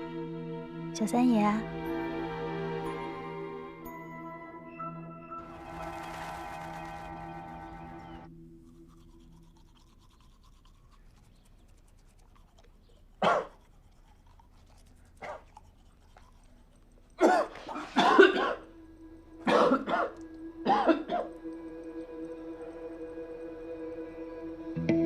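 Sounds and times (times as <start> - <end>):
person coughing: 17.2 - 18.6, 19.4 - 21.3.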